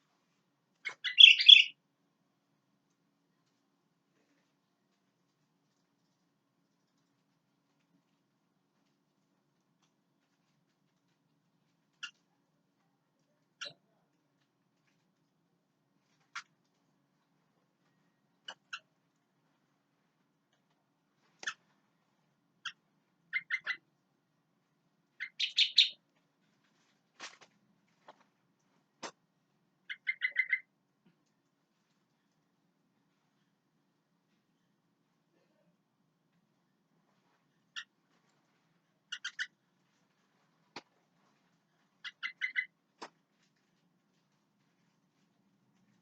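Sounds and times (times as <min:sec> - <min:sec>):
bird calling in clear notes: 0:00.8 - 0:01.8, 0:22.6 - 0:23.8, 0:25.2 - 0:26.0, 0:29.9 - 0:30.7, 0:39.1 - 0:39.6, 0:42.0 - 0:42.8.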